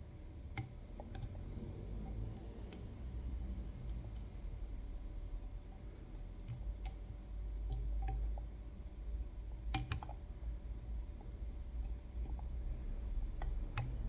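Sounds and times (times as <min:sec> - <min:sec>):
steady low hum: 0:00.0 - 0:14.0
lock pick clicks: 0:09.7 - 0:10.1.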